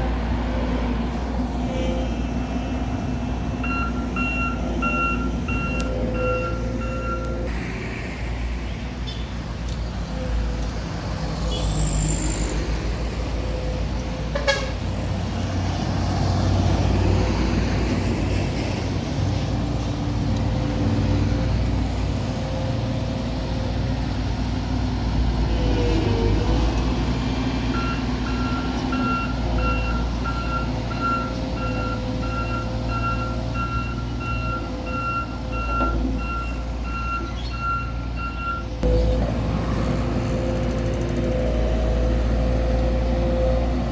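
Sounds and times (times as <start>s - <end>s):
diesel engines droning: 0.0s - 43.9s
reversing alarm beeps: 3.6s - 7.4s, 27.8s - 39.0s.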